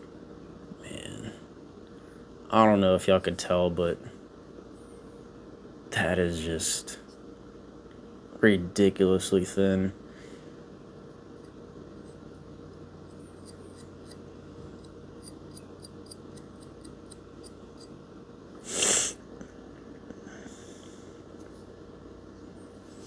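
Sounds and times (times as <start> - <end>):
person sniffing: 18.6 - 19.2.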